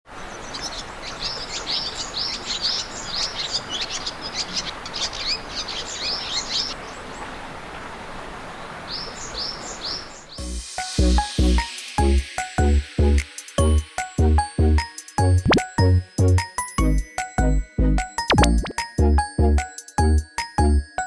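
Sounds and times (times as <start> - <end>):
steady outdoor hiss: 0.1 - 15.5
small birds chirping: 0.2 - 7.9, 8.5 - 10.4
music with a beat: 10.4 - 21.0.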